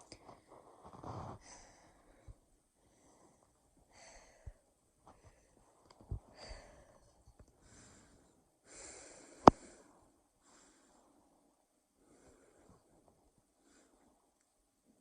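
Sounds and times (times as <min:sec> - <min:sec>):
person breathing heavily: 0:00.2 - 0:11.3.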